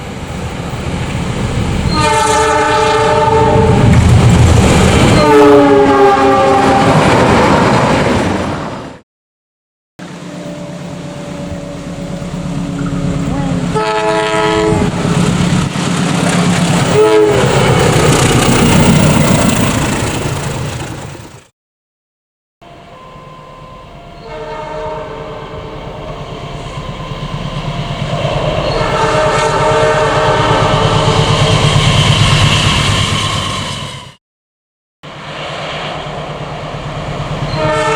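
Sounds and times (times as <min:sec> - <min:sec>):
train rumble: 0:00.0 - 0:09.0, 0:10.0 - 0:21.5, 0:23.8 - 0:34.2, 0:35.1 - 0:37.9
locomotive horn blasts: 0:01.9 - 0:03.9, 0:05.2 - 0:07.0, 0:12.7 - 0:15.0, 0:16.9 - 0:17.5, 0:22.6 - 0:25.8, 0:28.6 - 0:31.2, 0:37.5 - 0:37.9.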